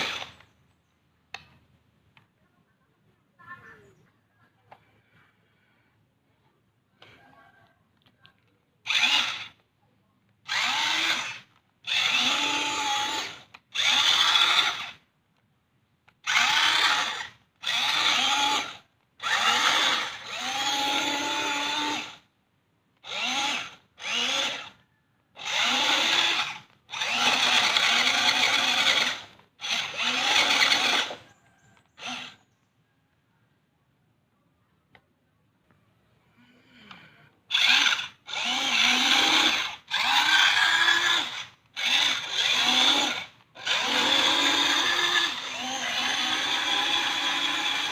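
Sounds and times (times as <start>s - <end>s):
power tool motor bursts: 0.0s - 0.5s, 8.8s - 9.6s, 10.4s - 15.0s, 16.2s - 22.3s, 23.0s - 32.4s, 36.9s - 47.9s.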